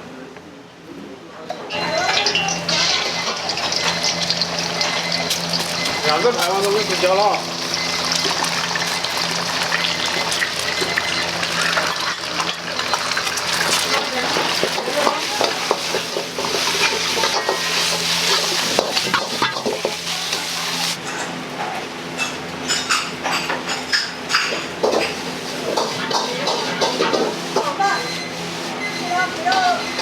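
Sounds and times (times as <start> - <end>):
food sizzling in a wok: 1.7 - 21.0.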